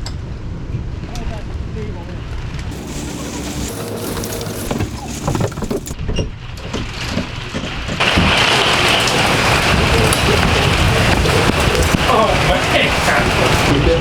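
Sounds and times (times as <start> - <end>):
knocks and rattles: 2.7 - 6.1
wind rumbling: 8.0 - 14.0
wind-driven rain hissing: 8.0 - 14.0.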